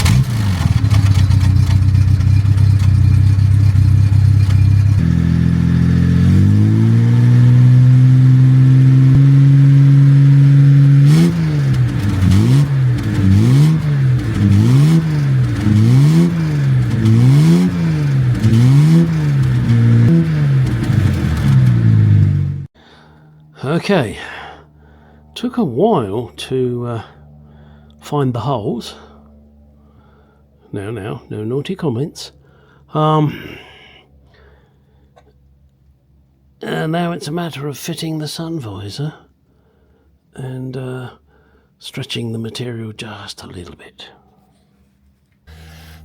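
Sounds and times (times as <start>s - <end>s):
car engine idling and revving: 0.0s - 22.8s, 27.2s - 27.5s, 45.5s - 46.0s.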